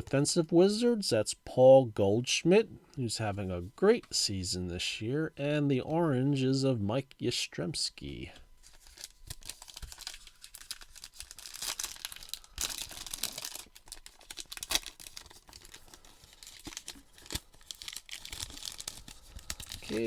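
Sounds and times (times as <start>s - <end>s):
plastic wrapper crinkling: 8.6s - 20.0s.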